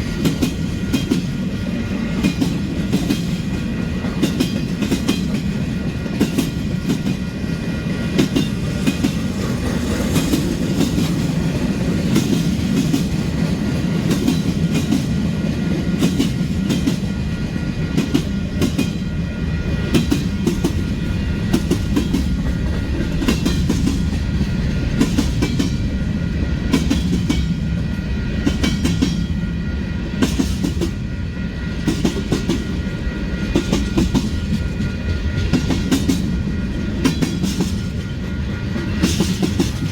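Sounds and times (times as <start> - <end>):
freight train rolling past: 0.0 - 39.9.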